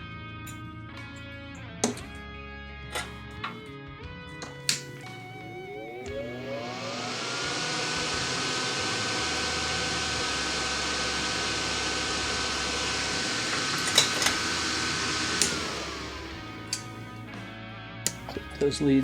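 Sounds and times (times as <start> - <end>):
sharp clicks: 4.4 - 5.4, 12.5 - 17.1
small electric motor whirring: 6.1 - 17.4.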